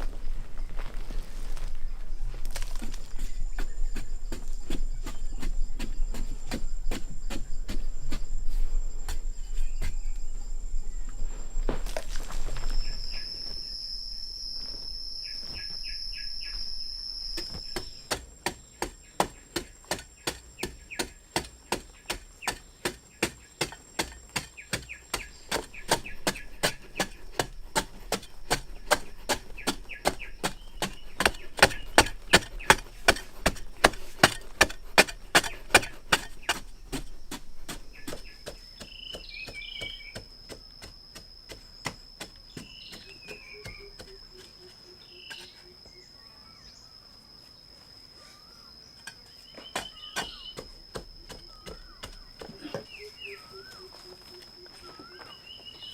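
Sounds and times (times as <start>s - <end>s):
crickets trilling: 0.0s - 55.9s
bird chirping: 12.6s - 47.2s, 48.2s - 55.9s.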